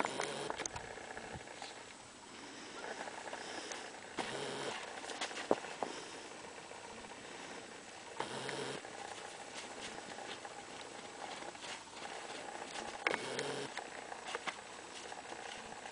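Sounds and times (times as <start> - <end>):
puppies scuffling and pattering: 4.8 - 6.0, 9.0 - 13.1, 14.2 - 15.9.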